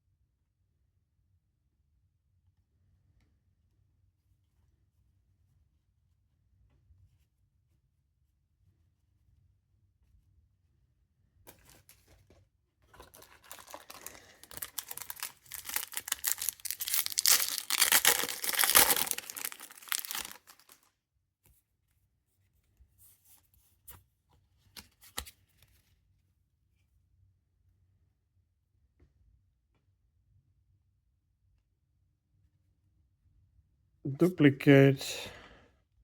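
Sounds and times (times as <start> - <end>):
foil wrapper crinkling and tearing: 12.9 - 20.8.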